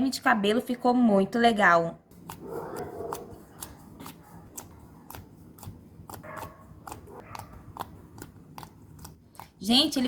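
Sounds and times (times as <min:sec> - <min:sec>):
slime squishing: 0:02.2 - 0:10.0.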